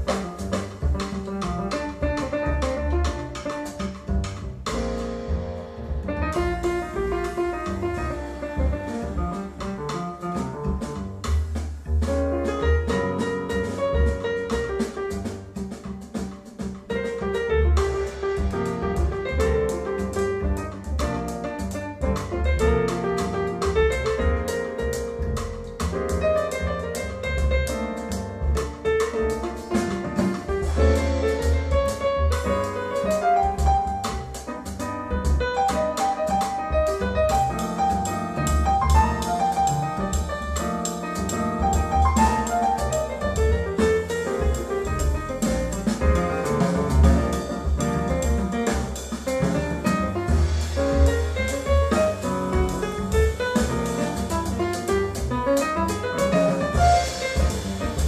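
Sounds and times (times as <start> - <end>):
deep double bass notes: 0.0 - 58.0
piano lines: 0.0 - 58.0
cymbal and drum hits: 57.0 - 58.0.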